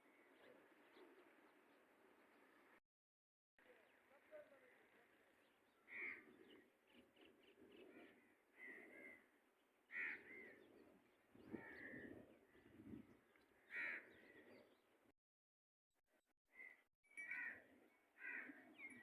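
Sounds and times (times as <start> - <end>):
harsh bird calls: 5.4 - 14.7.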